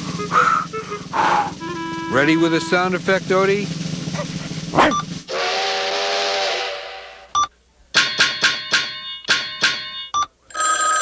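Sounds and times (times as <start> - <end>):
hissing whistle-like blast: 0.1 - 2.4, 4.9 - 7.3.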